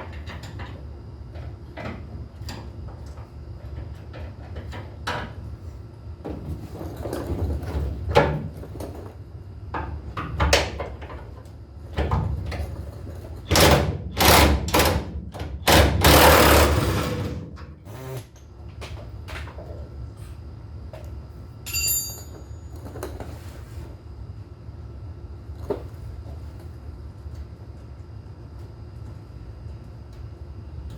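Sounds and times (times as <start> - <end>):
short metallic ring: 21.6 - 22.7.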